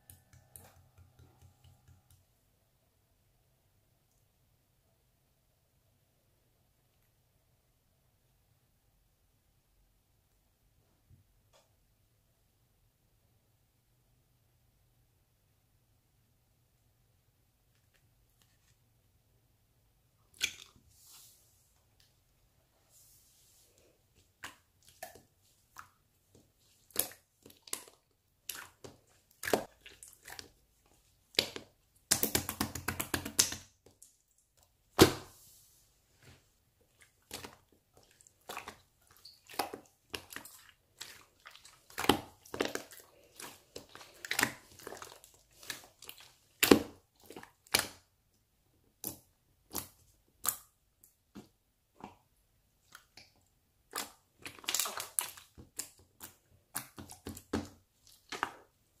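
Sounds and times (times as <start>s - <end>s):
slime squishing and popping: 31.3s - 34.0s, 53.0s - 58.7s.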